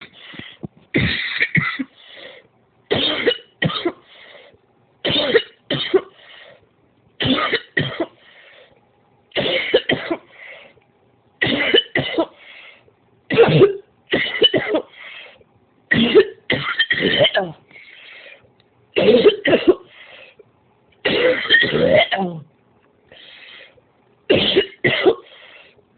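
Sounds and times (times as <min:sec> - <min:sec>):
woman coughing: 0:00.9 - 0:01.9, 0:02.9 - 0:04.0, 0:05.1 - 0:06.1, 0:07.2 - 0:08.2, 0:09.4 - 0:10.3, 0:11.4 - 0:12.4, 0:13.3 - 0:14.9, 0:15.9 - 0:17.6, 0:19.0 - 0:19.9, 0:21.0 - 0:22.5, 0:24.3 - 0:25.3.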